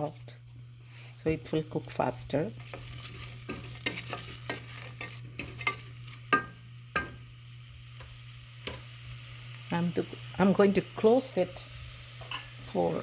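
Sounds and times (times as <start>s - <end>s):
onion sizzling in a pot: 0.0s - 13.0s
spoon scraping a metal pot: 2.5s - 7.2s.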